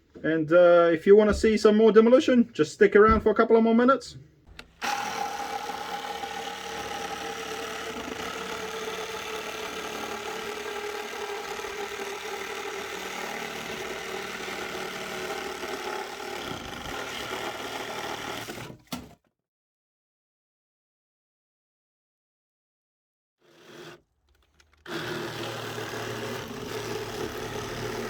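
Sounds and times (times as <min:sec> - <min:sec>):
reciprocating saw cutting: 0:04.5 - 0:18.8, 0:24.7 - 0:28.0.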